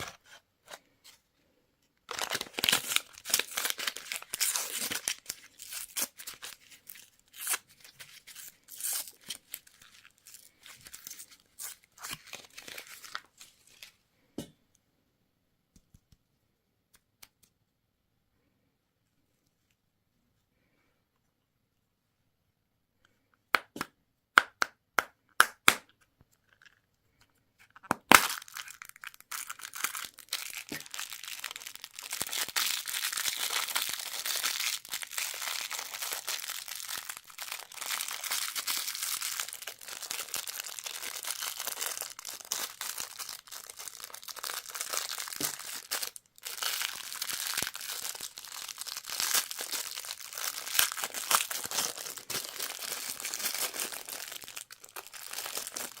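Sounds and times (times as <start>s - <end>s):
plastic wrapper crinkling and tearing: 2.0s - 14.0s, 27.6s - 56.0s.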